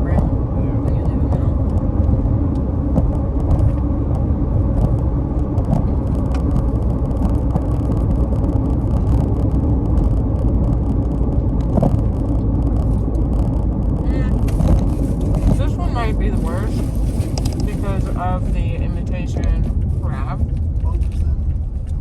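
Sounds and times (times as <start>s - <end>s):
car road and engine rumble: 0.0s - 22.0s
small clicks and ticks: 1.3s - 15.6s.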